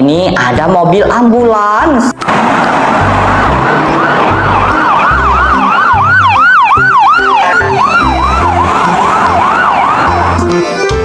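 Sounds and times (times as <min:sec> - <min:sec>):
ambulance siren wailing: 0:02.2 - 0:11.0
higher siren sweeping: 0:02.3 - 0:11.0
low pulsing beat: 0:03.0 - 0:11.0.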